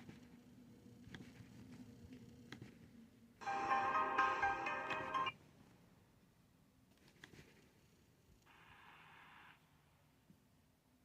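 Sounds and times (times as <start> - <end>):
faint low hum: 0.0 - 11.0
electronic ringtone melody: 3.4 - 5.4.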